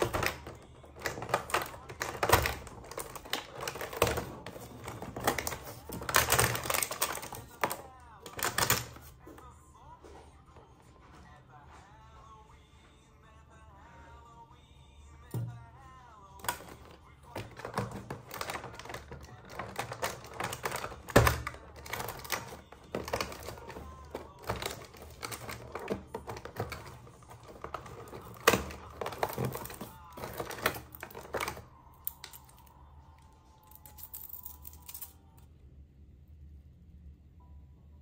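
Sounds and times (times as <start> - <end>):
plastic toys clicking and rustling: 0.0 - 9.1, 16.4 - 32.7, 33.6 - 35.4.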